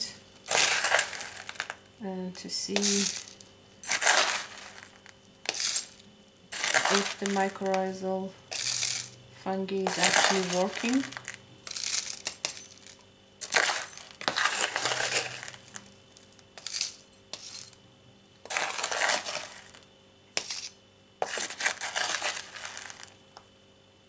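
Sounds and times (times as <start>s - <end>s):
gritty potting mix pouring: 0.5s - 1.8s, 2.8s - 7.8s, 8.5s - 9.1s, 9.8s - 15.9s, 18.4s - 19.8s, 21.2s - 23.2s.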